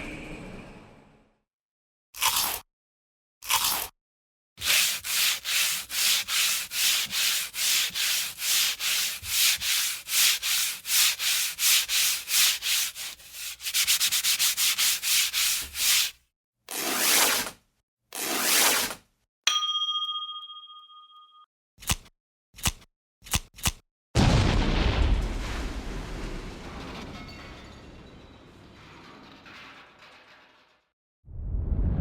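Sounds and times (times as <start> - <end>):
abrasive rubbing strokes: 4.6 - 16.2.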